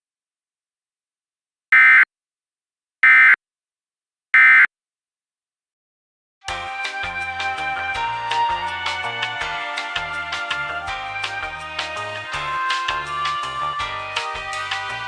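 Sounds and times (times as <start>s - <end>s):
music: 6.4s - 15.0s.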